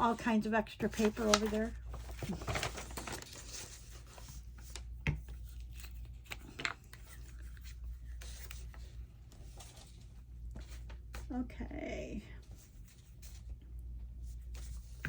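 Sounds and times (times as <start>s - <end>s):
paper rustling: 0.0s - 11.2s.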